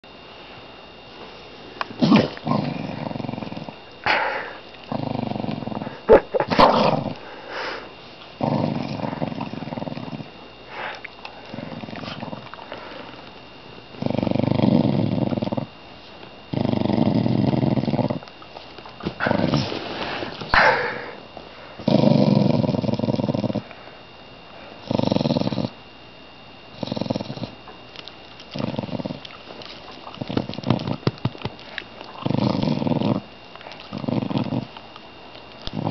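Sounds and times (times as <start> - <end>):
dog growling: 1.9 - 7.8, 8.4 - 13.2, 13.9 - 15.7, 16.5 - 18.3, 19.0 - 21.2, 21.8 - 23.7, 24.8 - 25.8, 26.7 - 27.6, 28.4 - 34.8, 35.6 - 35.9.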